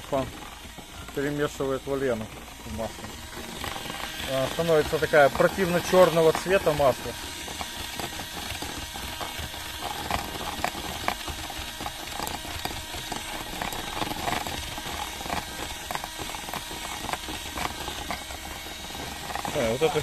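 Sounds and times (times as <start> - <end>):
oil stirred in a container: 0.0 - 20.0.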